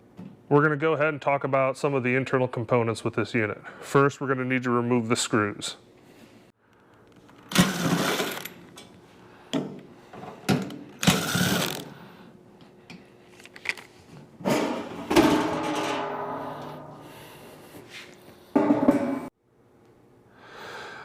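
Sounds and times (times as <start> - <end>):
power screwdriver whirring: 7.5 - 8.5, 11.0 - 11.9.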